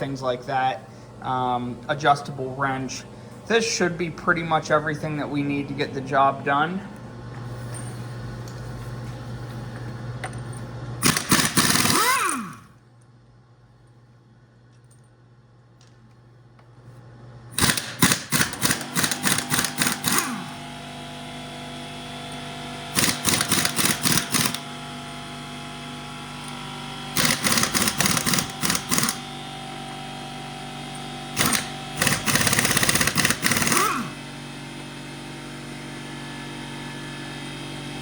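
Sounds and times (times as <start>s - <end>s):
impact wrench rattling: 11.0s - 12.6s, 17.6s - 20.5s, 22.9s - 24.7s, 27.2s - 29.3s, 31.3s - 34.2s.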